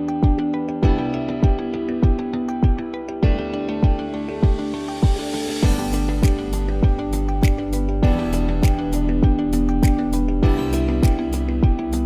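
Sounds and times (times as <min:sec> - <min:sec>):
electronic music with kick drum: 0:00.0 - 0:12.0.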